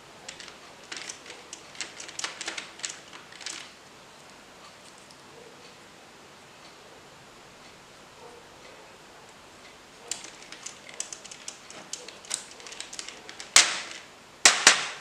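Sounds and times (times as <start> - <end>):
plastic keyboard parts clicking: 0.2 - 3.7, 10.1 - 14.8.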